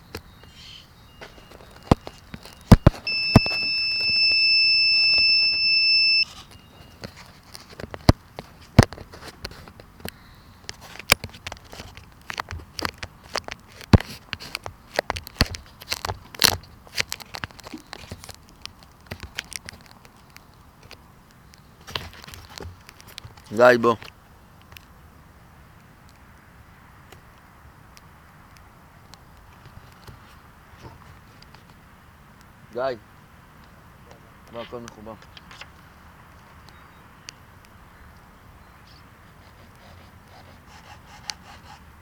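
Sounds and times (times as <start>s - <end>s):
sharp clicks and knocks: 1.5s - 4.2s
high-pitched buzzer beep: 2.7s - 6.3s
faint tone: 2.7s - 7.0s.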